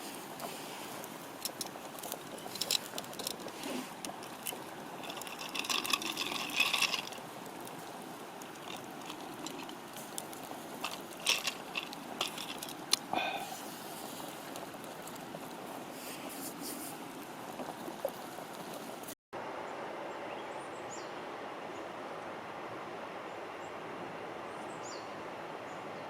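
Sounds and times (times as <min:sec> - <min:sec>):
campfire crackling and popping: 0:00.0 - 0:19.2
campfire hiss: 0:00.0 - 0:19.2.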